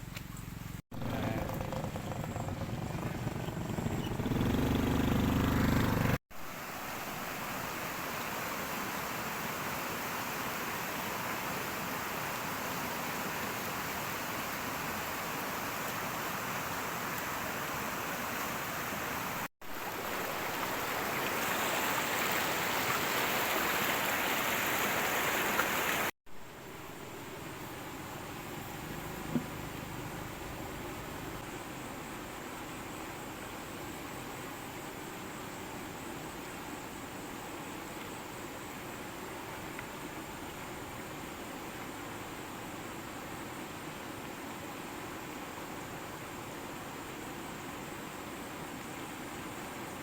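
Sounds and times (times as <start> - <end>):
flowing water rushing: 1.0 - 31.4.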